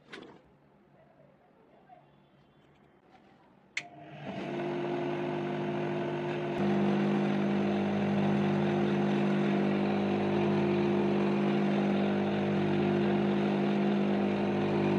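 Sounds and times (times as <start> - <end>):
bench grinder whirring: 3.8 - 14.9.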